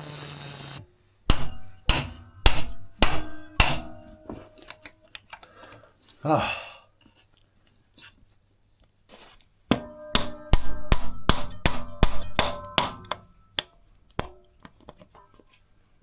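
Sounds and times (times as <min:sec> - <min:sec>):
hammer striking steel tool: 0:01.3 - 0:04.9, 0:09.7 - 0:13.6.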